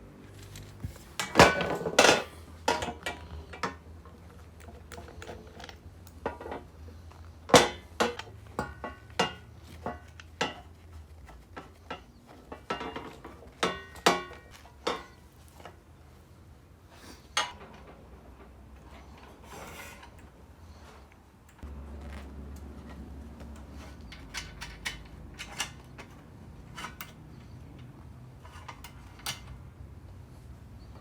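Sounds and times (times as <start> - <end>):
hard parts knocking and clinking: 0.4 - 10.9, 11.5 - 15.2, 22.9 - 29.7.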